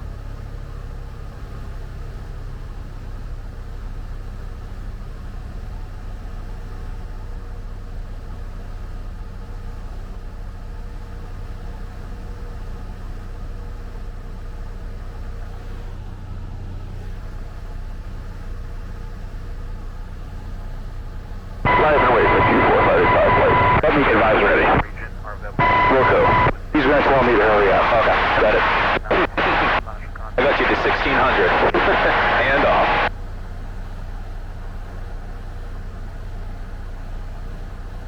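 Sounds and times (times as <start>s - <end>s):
plane engine and propeller droning: 21.7s - 33.1s.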